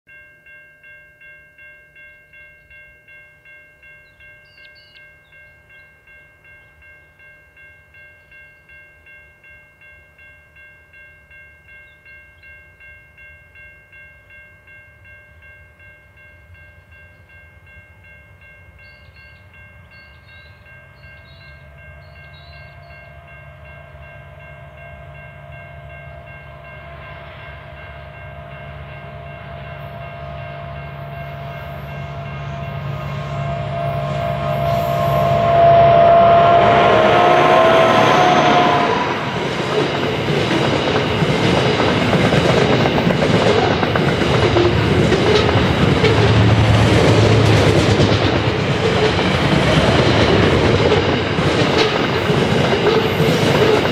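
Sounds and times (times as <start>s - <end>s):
diesel locomotives approaching: 10.9s - 53.9s.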